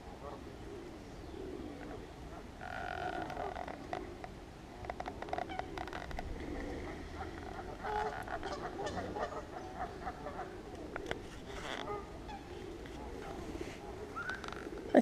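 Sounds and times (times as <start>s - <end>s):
waterfowl calls: 4.9s - 15.0s
geese honking: 6.7s - 10.8s, 11.7s - 13.6s.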